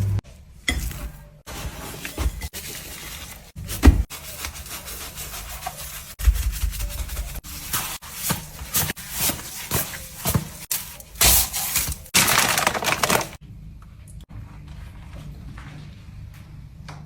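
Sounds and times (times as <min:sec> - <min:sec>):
food scraping and crackling: 0:01.5 - 0:13.4.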